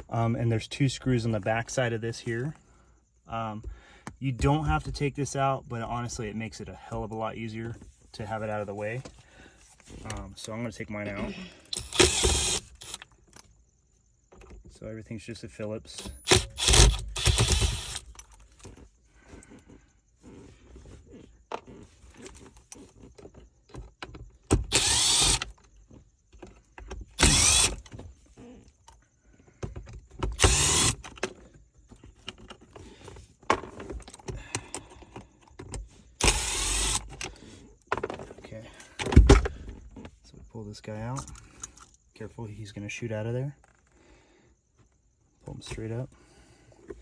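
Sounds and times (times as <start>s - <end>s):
power drill spinning out screws: 11.6s - 13.1s, 15.9s - 18.3s, 24.5s - 25.6s, 27.2s - 28.0s, 30.3s - 31.1s, 36.2s - 37.5s.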